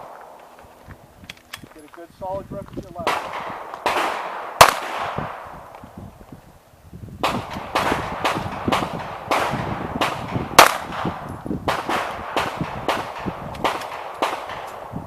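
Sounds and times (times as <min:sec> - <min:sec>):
pistol shots with echo: 0:03.0 - 0:05.6, 0:07.2 - 0:14.9.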